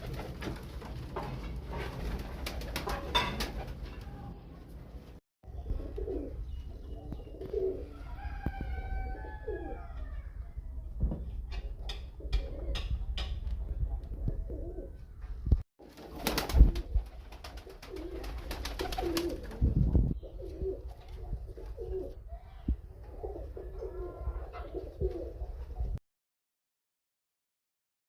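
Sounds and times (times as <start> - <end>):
pigeons cooing: 5.5 - 10.4, 11.5 - 15.4, 17.4 - 26.0.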